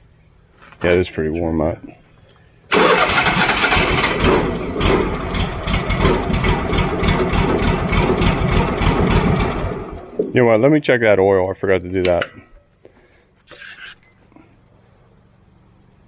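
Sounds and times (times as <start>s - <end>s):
gasoline engine starting and running: 2.7s - 10.4s.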